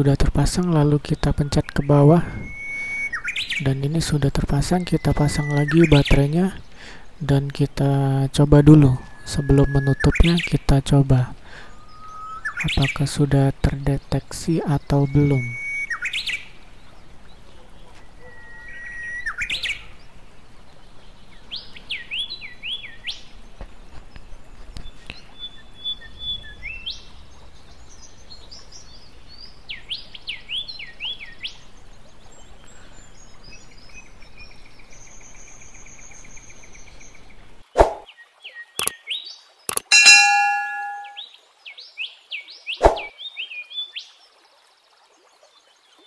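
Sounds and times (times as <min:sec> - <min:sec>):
birds chirping: 0:00.0 - 0:16.2, 0:39.7 - 0:41.2
sharp clicks: 0:39.7 - 0:41.1
bird trilling: 0:39.8 - 0:41.2.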